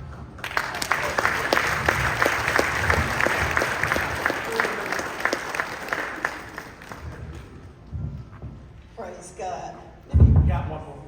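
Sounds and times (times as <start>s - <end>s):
crowd applauding: 0.0s - 7.7s.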